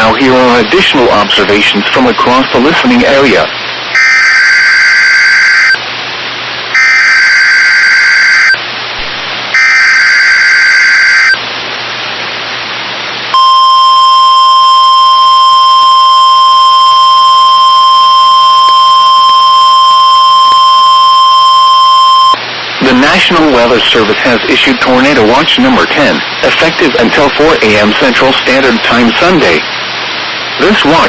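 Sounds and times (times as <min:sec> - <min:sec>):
radio hiss: 0:00.0 - 0:05.9, 0:06.5 - 0:11.5, 0:22.0 - 0:31.0
harsh digital data bursts: 0:04.0 - 0:05.8, 0:06.8 - 0:08.6, 0:09.6 - 0:11.4
steady single-tone warning alarm: 0:04.0 - 0:05.8, 0:06.8 - 0:08.6, 0:09.6 - 0:11.4, 0:13.4 - 0:22.4.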